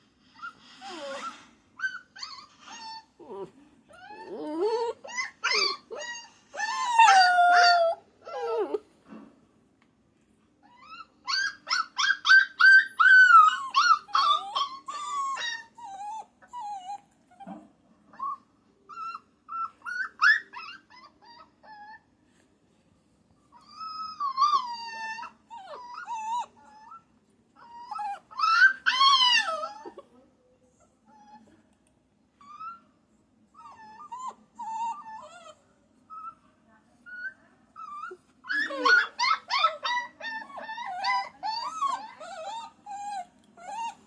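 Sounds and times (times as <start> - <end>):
puppy howling and whining: 0.4 - 8.9, 10.6 - 17.6, 18.2 - 22.0, 23.6 - 27.0, 27.6 - 30.0, 32.4 - 32.8, 33.6 - 36.4, 37.1 - 44.0
puppy yipping: 4.1 - 8.8, 10.7 - 17.0, 18.2 - 22.0, 27.6 - 30.0, 37.2 - 44.0.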